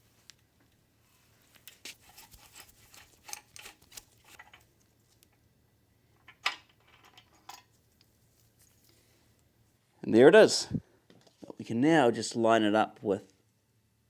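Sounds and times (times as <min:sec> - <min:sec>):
metal clicks and scrapes of tools: 0:01.4 - 0:05.4, 0:06.2 - 0:09.0.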